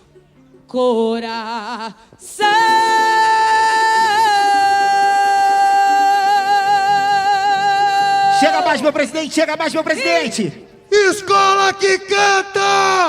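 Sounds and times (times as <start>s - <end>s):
singer holding long high note: 2.3s - 9.0s.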